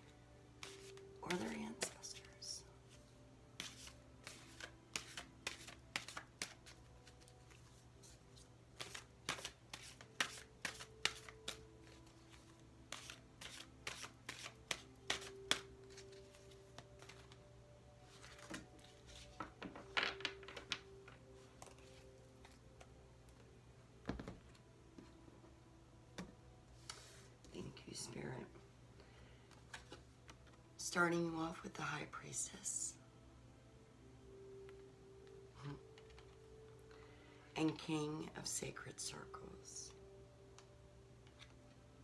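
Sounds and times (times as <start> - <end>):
soft background music: 0.0 - 42.0
cards being shuffled: 0.5 - 2.4, 3.6 - 17.4, 18.1 - 22.9.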